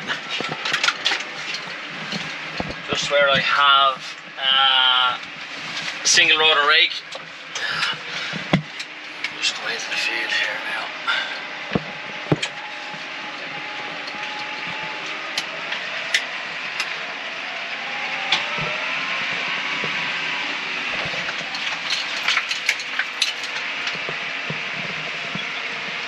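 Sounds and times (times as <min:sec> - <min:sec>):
tractor engine running: 0:00.0 - 0:26.0
knocks and rattles: 0:20.9 - 0:26.0.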